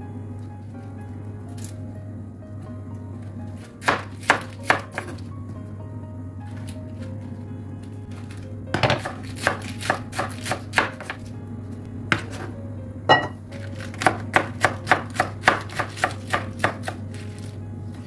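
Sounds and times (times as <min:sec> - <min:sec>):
knife chopping on cutting board: 0:03.8 - 0:05.2, 0:08.8 - 0:11.2, 0:13.1 - 0:17.2.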